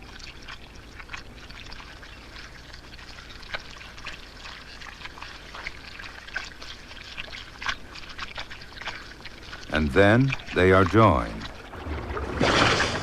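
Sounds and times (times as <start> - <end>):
wet slaps and gulps: 3.5 - 10.6
fish splashing in mud: 11.5 - 13.0.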